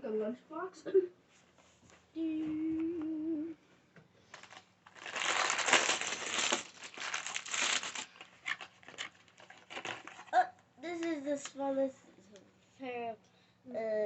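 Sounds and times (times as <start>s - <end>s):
person humming: 2.2s - 3.6s
plastic packaging crinkling: 4.3s - 10.4s.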